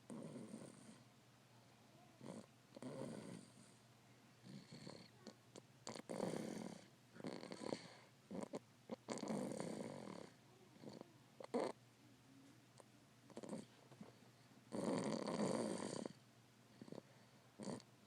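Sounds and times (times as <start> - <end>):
person snoring: 14.7 - 16.2, 16.8 - 17.8.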